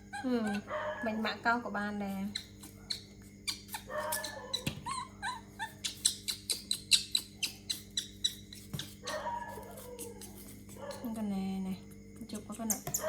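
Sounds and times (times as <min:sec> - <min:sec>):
baby monkey squeaky calls: 0:00.0 - 0:00.7, 0:02.3 - 0:09.9
low electrical hum: 0:00.0 - 0:13.0.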